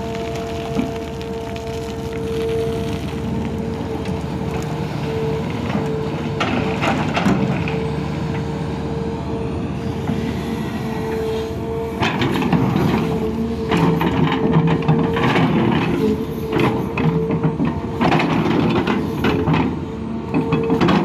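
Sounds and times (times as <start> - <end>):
rock scraping and crunching: 0.0 - 7.5
excavator diesel rumble and whine: 0.0 - 21.0.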